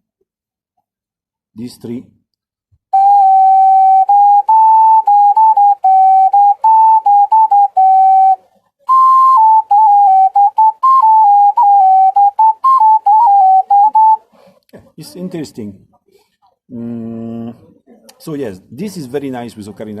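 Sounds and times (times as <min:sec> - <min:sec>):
ocarina melody: 0:02.9 - 0:14.2.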